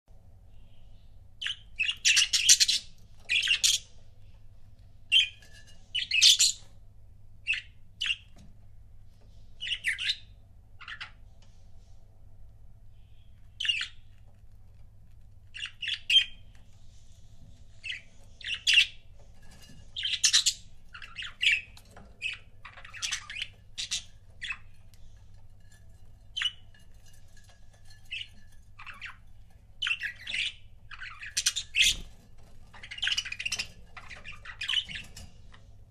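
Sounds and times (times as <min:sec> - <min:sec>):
budgerigars chirping and squawking: 0:01.4 - 0:04.0, 0:05.1 - 0:06.7, 0:09.6 - 0:11.6, 0:13.1 - 0:14.2, 0:15.5 - 0:25.4, 0:26.4 - 0:35.7.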